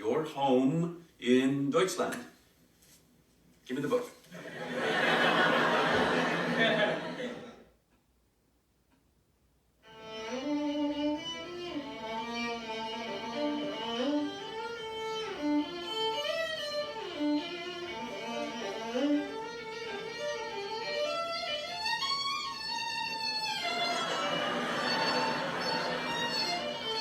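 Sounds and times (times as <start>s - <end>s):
fiddle melody: 9.8s - 27.0s.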